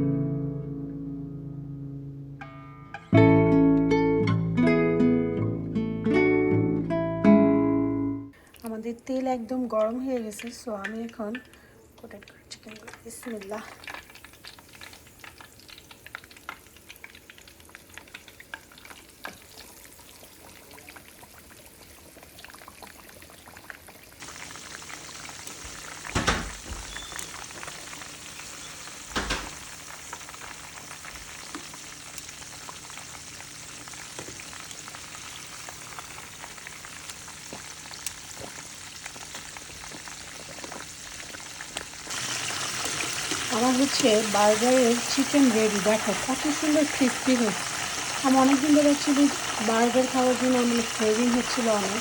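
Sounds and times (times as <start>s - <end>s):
chicken deep-frying in hot oil: 8.4s - 52.0s
dull knocks: 26.1s - 27.0s, 29.1s - 29.7s.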